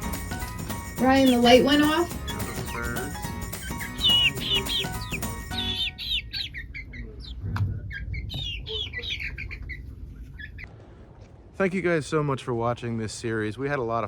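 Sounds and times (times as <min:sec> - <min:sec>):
background music with a beat: 0:00.0 - 0:05.8
chicks chirping: 0:00.0 - 0:10.7.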